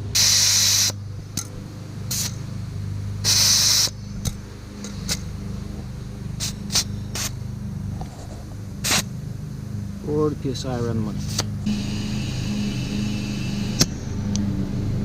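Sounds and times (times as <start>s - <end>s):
air hissing from tire valve: 0.0s - 9.1s, 11.2s - 15.0s
steady low hum: 0.0s - 15.0s.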